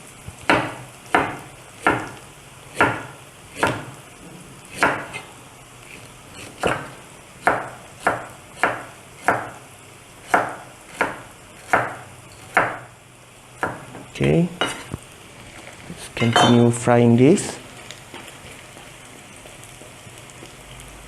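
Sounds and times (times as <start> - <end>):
knife chopping on wooden board: 0.5 - 4.0, 4.7 - 5.2, 6.4 - 9.6, 10.2 - 12.9, 13.6 - 14.0.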